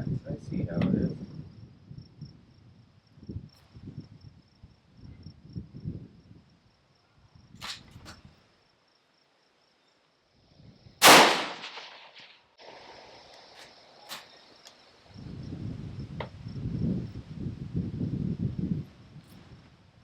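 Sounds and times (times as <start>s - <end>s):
wind rumbling on microphone: 0.0s - 8.5s, 10.4s - 11.9s, 14.9s - 20.0s
crickets chirping: 0.0s - 20.0s
loud rifle shot: 11.0s - 12.3s
sharp clicks: 11.0s - 12.3s.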